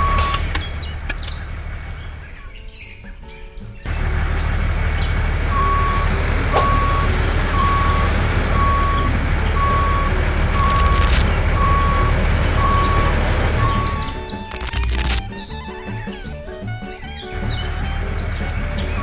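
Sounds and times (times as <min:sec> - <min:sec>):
reversing alarm beeping: 0:00.0 - 0:00.8, 0:03.9 - 0:15.2
truck engine running: 0:00.0 - 0:02.5, 0:03.9 - 0:19.0
brief crackle: 0:08.9 - 0:15.4.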